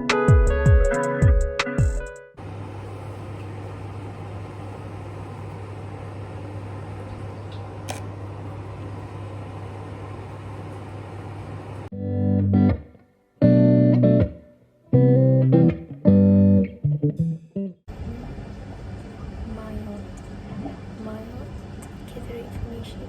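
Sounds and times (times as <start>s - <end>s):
music with low notes: 0.0s - 2.3s
machine hum and hiss: 2.4s - 11.9s.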